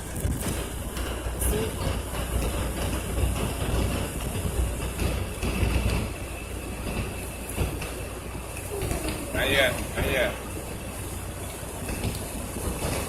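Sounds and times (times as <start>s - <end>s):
car cabin road rumble: 0.0s - 6.2s, 7.0s - 13.0s.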